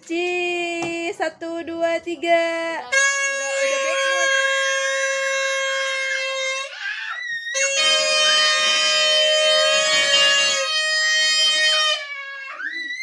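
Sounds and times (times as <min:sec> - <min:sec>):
toy party horn blasts: 0:02.8 - 0:12.6.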